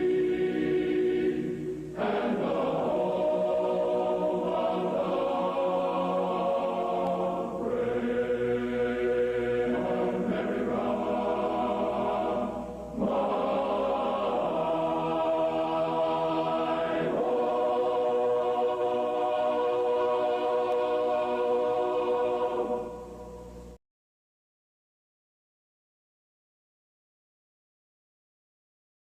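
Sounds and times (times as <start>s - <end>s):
slow choir-like chords: 0.0s - 23.8s.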